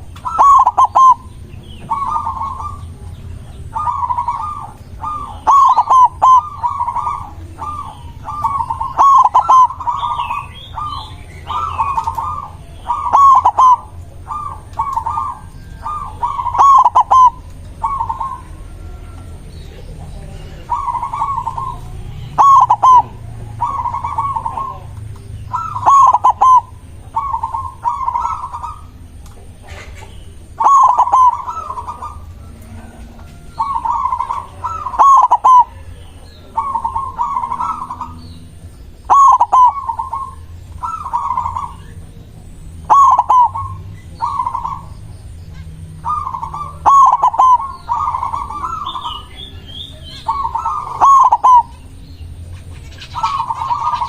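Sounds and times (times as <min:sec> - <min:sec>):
dove cooing: 0:00.0 - 0:54.0.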